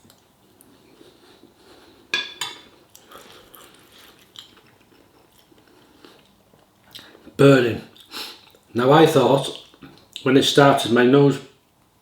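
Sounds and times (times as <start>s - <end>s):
cutlery clinking on a plate: 2.1s - 2.7s.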